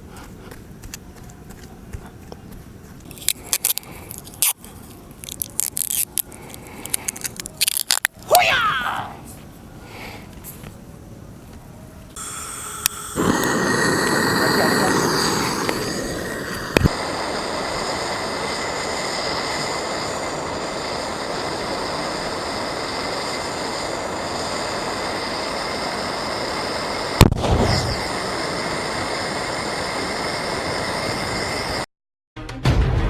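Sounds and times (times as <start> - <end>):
gas welding torch hissing: 3.1 - 8.1, 12.2 - 31.9
aerosol can bursting bang: 12.2 - 17.0, 27.2 - 28.1.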